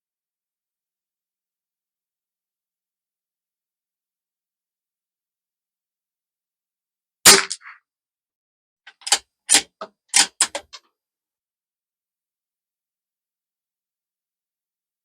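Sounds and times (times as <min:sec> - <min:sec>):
rifle shot: 0:07.3 - 0:07.8
rifle bolt metallic clicks: 0:08.9 - 0:10.8.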